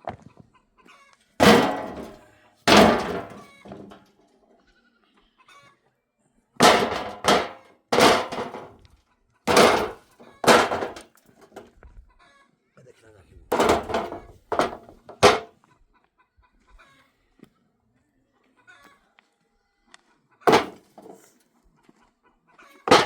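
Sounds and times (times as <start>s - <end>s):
sharp heavy thuds: 1.4s - 4.0s, 6.6s - 8.8s, 9.5s - 11.6s, 13.5s - 15.5s, 20.5s - 21.2s.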